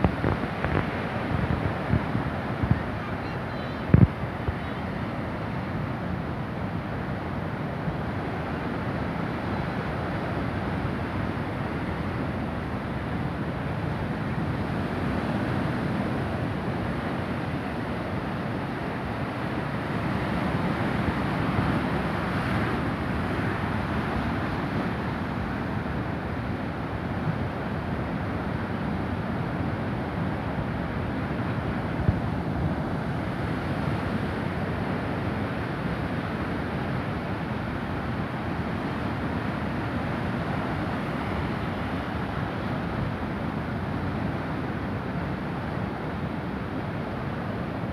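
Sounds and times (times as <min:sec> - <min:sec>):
wind buffeting microphone: 0:00.0 - 0:04.6.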